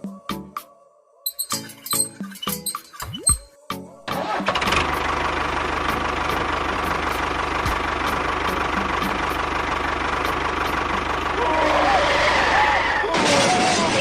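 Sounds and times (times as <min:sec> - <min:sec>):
engine idling: 0:04.2 - 0:13.0.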